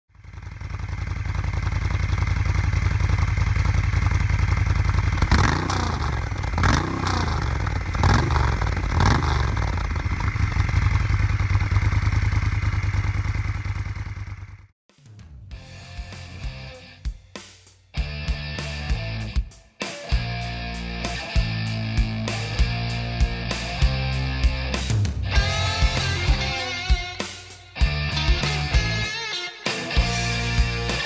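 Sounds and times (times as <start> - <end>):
motorcycle engine idling: 0.1 - 14.7.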